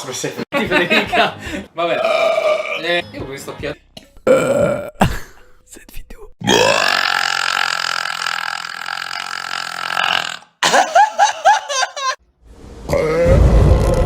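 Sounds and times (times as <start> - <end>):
person burping: 2.0 - 2.9, 4.1 - 5.5, 6.4 - 11.3
pitch-bending vocal sounds: 12.9 - 14.0.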